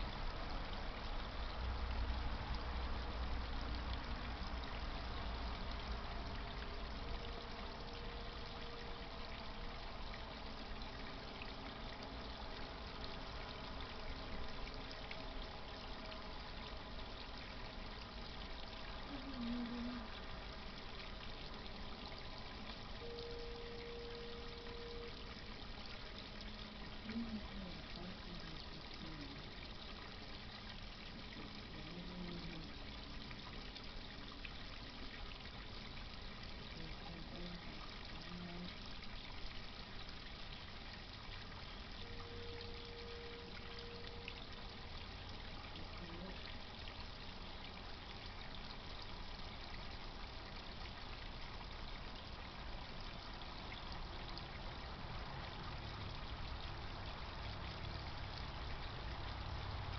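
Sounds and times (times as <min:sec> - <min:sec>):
water trickling and splashing: 0:00.0 - 0:59.9
faint low tones: 0:03.4 - 0:29.8, 0:31.0 - 0:33.8, 0:41.3 - 0:47.1.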